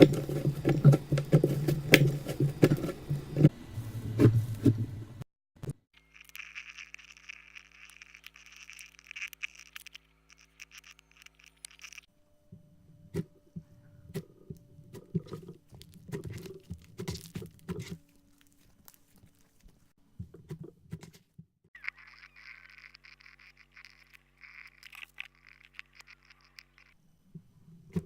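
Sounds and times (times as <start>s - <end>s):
slime crackling patter: 0.0s - 3.5s, 6.0s - 12.1s, 14.9s - 19.9s, 21.8s - 27.0s.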